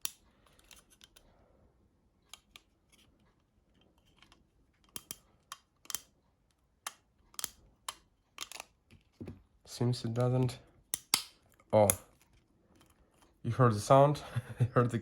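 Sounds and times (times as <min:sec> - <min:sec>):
plastic parts clicking together: 0:00.0 - 0:01.3, 0:02.2 - 0:09.4, 0:10.1 - 0:13.4.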